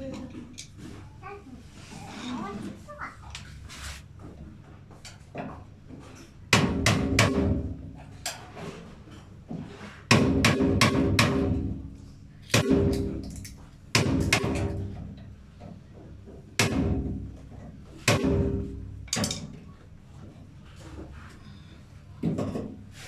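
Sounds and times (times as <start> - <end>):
sharp knocks on metal: 6.5 - 7.9, 10.1 - 11.8, 12.5 - 13.2, 13.9 - 15.1, 16.6 - 17.3, 18.0 - 19.5.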